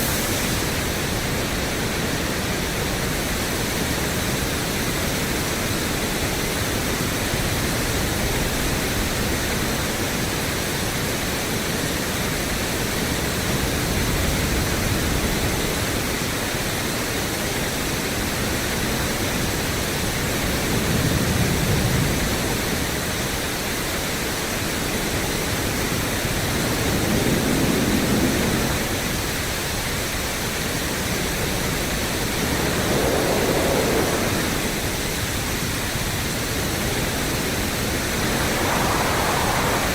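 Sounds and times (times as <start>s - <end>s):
pink noise hiss: 0.0s - 7.8s, 22.1s - 39.9s.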